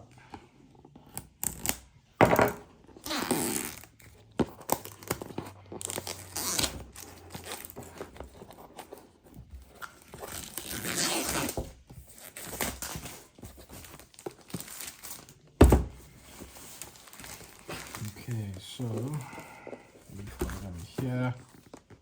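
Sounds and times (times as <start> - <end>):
box seal tearing: 4.5 - 7.8, 10.2 - 15.2
packaging crinkling: 9.7 - 15.5, 16.1 - 22.0.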